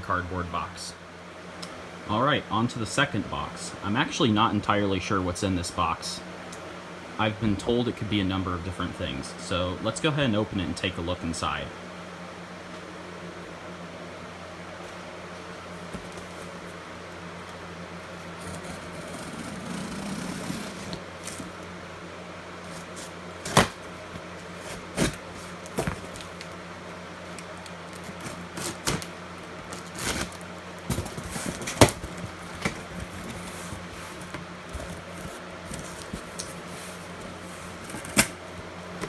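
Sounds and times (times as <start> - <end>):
steady low hum: 0.0 - 39.0
packing rustling: 14.9 - 16.8, 18.0 - 21.7, 22.6 - 39.0
cardboard knocks and clicks: 15.9 - 16.6.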